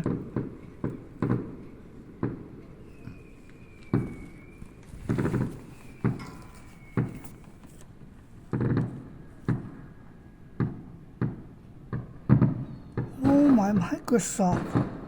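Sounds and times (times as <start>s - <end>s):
fireworks crackling burst: 0.0s - 9.7s, 13.2s - 15.0s
fireworks bangs: 0.0s - 15.0s.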